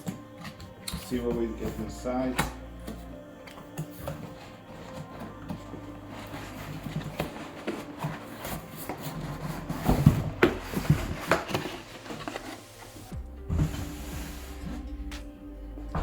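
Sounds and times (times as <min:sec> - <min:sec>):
cardboard box rubbing and scraping: 0:03.8 - 0:15.2.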